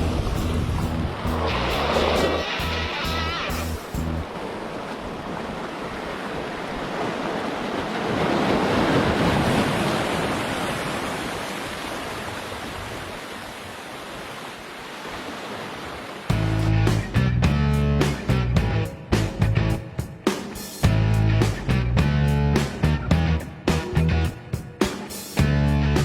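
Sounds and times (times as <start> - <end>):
surf washing onto beach: 0.0 - 16.5.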